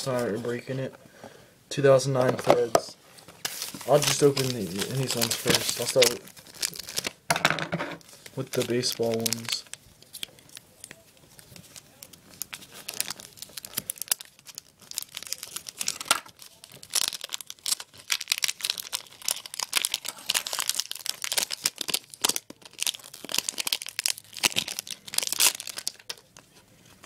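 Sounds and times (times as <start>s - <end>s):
cards being handled: 2.2s - 6.2s
foil wrapper tearing and crinkling: 3.4s - 7.2s, 8.0s - 26.4s.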